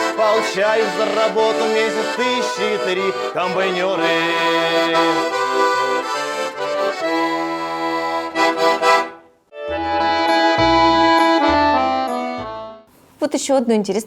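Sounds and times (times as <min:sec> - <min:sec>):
accordion music: 0:00.0 - 0:12.9.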